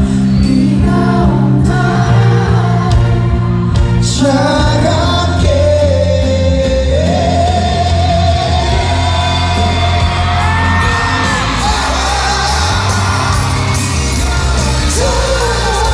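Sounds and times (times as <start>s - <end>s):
live pop band playing: 0.0s - 15.9s
man singing: 0.0s - 15.9s
audience shouting and screaming: 8.0s - 15.9s.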